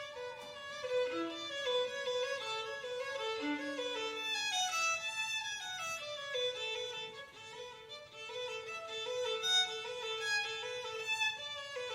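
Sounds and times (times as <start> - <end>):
violin melody: 0.0 - 11.9.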